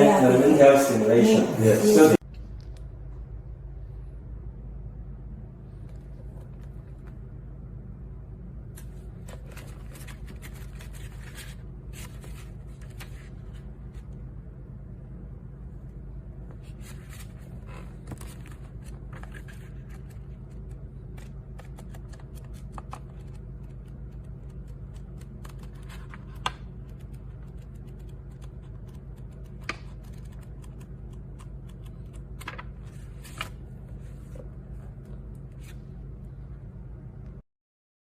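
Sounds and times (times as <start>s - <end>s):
low background hum: 0.0s - 37.4s.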